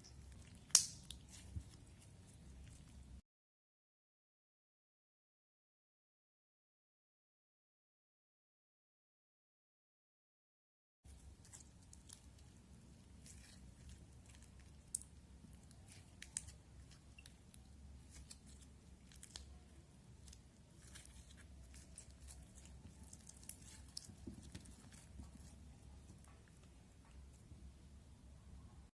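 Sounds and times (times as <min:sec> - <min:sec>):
slime crackling and clicking: 0:00.5 - 0:01.4, 0:14.3 - 0:19.6.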